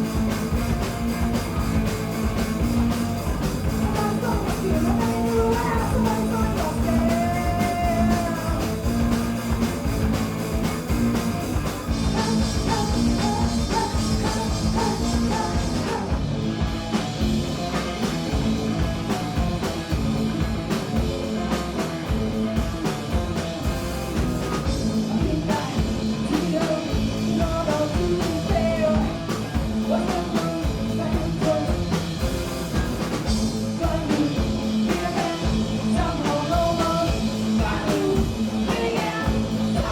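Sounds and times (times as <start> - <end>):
bass guitar: 0.0 - 39.9
distorted electric guitar: 0.0 - 39.9
drums: 0.0 - 39.9
person singing: 3.6 - 9.1, 12.0 - 16.2.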